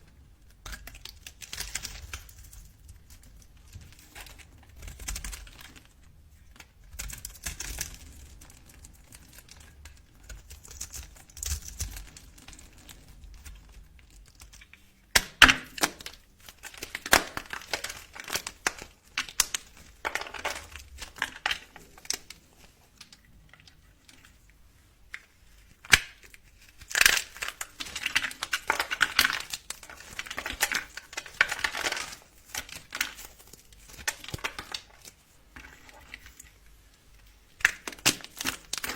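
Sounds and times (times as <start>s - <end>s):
bar soap crackling and crunching: 0.0s - 38.9s
soap cracking sharply: 15.2s - 22.2s.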